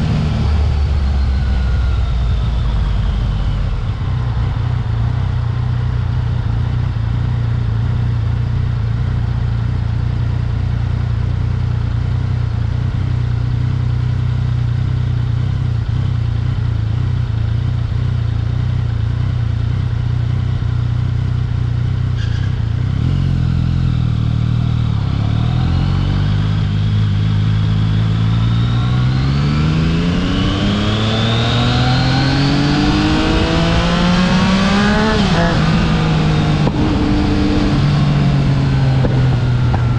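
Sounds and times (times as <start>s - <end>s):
motorcycle engine revving: 0.0s - 39.9s
wind and road noise: 0.0s - 39.9s.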